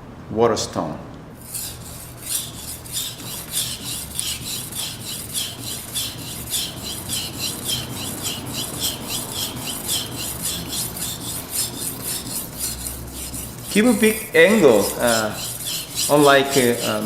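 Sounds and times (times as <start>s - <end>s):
knife scraping on whetstone: 1.4s - 17.0s.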